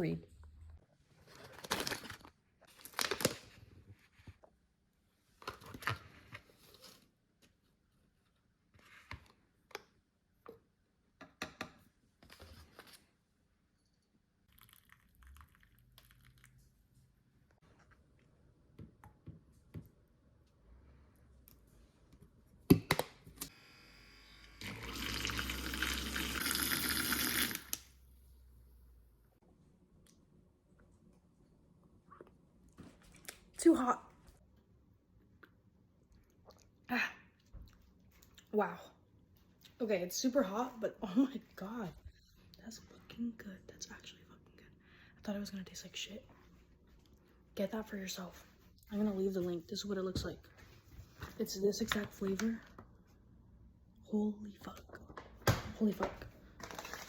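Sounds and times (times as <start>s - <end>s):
handling mug and coffee packaging: 1.2s - 4.5s, 56.5s - 57.0s
liquid being poured: 14.5s - 16.6s, 24.6s - 27.8s.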